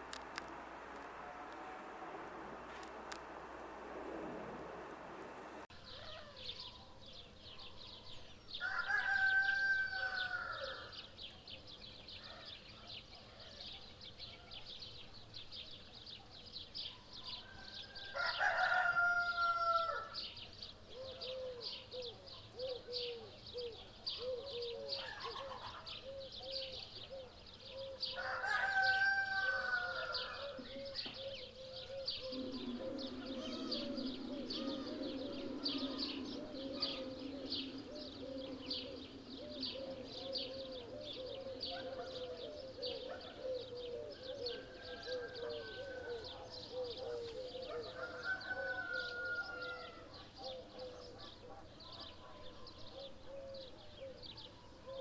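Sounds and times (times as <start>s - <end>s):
rooster crowing: 0.0s - 5.7s, 8.6s - 10.9s, 17.8s - 20.2s, 28.2s - 30.6s, 32.0s - 42.4s, 47.8s - 50.1s
dense high chirping: 32.0s - 41.7s.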